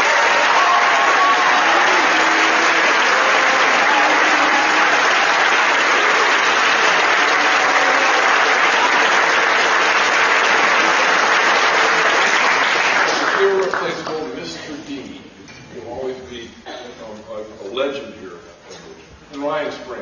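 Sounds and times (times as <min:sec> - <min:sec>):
audience applauding: 0:00.0 - 0:14.6.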